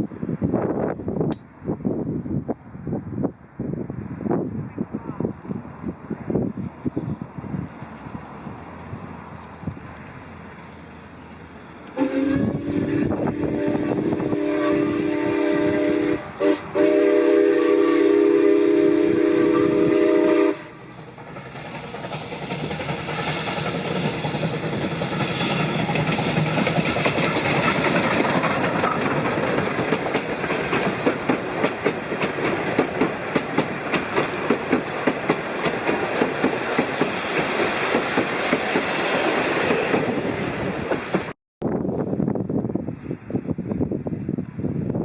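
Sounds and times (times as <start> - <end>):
train rumble: 0.0 - 45.0
steam train whistle: 12.0 - 20.9
wheels clicking over rail joints: 20.9 - 38.9.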